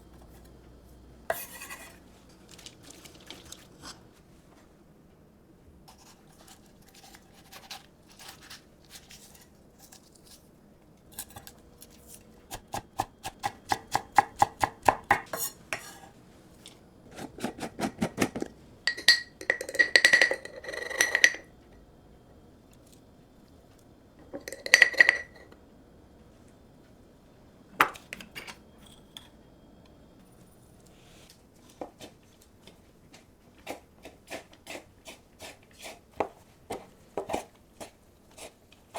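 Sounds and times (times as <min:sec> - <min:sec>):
utensils knocking against a bowl: 0:17.2 - 0:21.5, 0:24.2 - 0:25.5.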